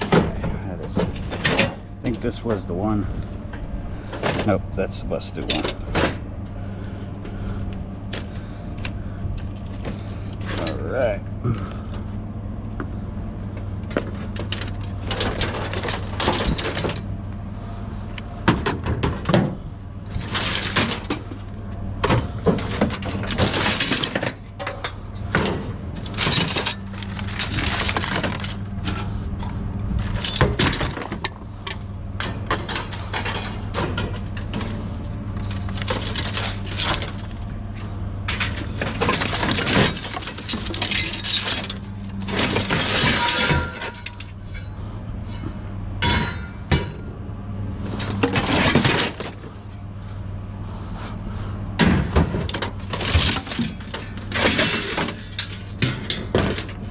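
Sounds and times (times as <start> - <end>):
steady low hum: 0.0 - 56.9
scrap cracking and clattering: 13.6 - 17.1, 18.4 - 47.0, 47.9 - 49.8, 51.8 - 56.9.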